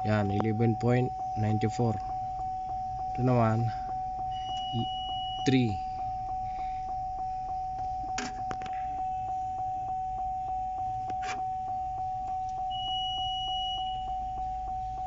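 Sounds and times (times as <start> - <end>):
vehicle warning chime: 0.0 - 15.0.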